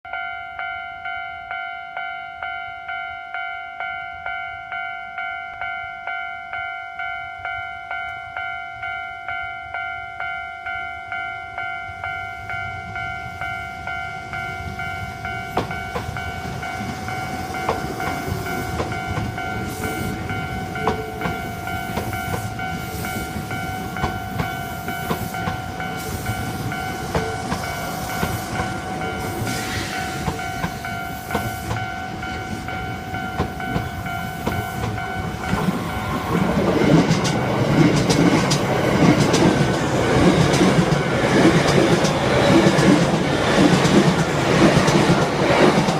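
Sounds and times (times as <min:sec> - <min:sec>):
level crossing alarm ringing: 0:00.1 - 0:45.9
train wheels clacking: 0:14.4 - 0:45.9.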